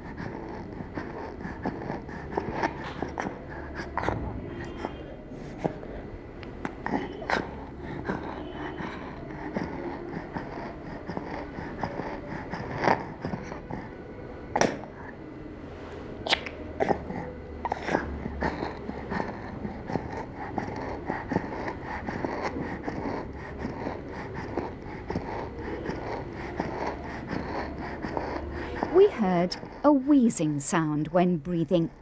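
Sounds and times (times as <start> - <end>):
child wheezing breath: 0.0 - 15.2
sudden sharp noises: 2.0 - 12.5.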